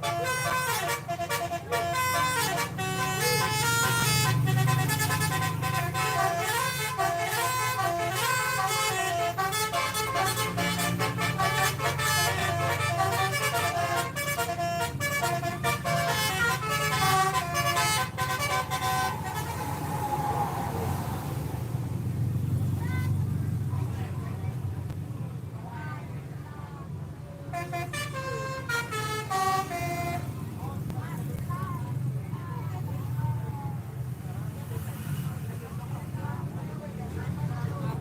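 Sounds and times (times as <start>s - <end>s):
musical air horns melody: 0.0s - 20.2s, 27.5s - 30.4s
bus engine running: 0.0s - 38.0s.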